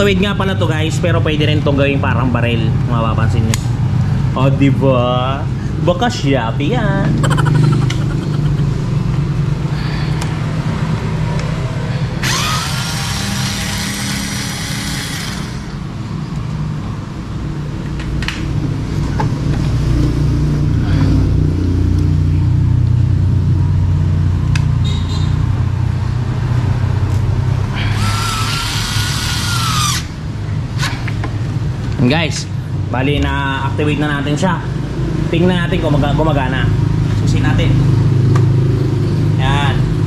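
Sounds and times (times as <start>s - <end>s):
steady low hum: 1.3s - 24.8s
electric screwdriver whirring: 12.2s - 15.8s, 27.8s - 30.1s.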